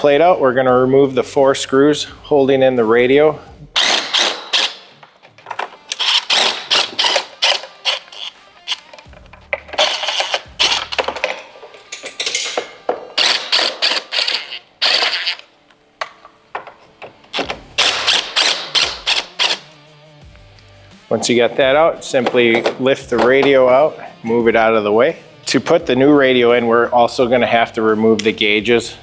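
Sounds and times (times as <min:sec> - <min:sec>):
hand ratchet clicking: 0:03.8 - 0:19.8.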